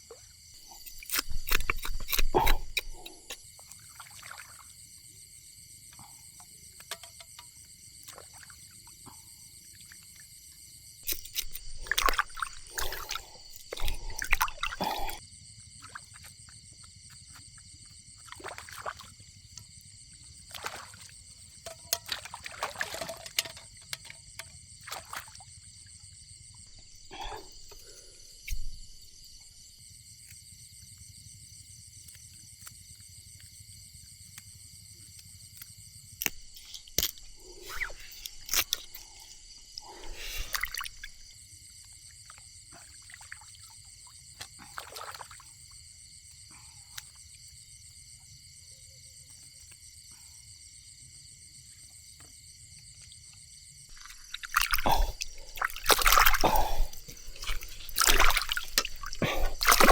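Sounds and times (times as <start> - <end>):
handling or water noise: 0.0 - 4.9, 6.4 - 10.2, 11.0 - 15.2, 18.2 - 19.6, 20.4 - 25.6, 36.2 - 41.3, 42.2 - 45.7, 53.9 - 59.9
high insect chorus: 0.0 - 59.9.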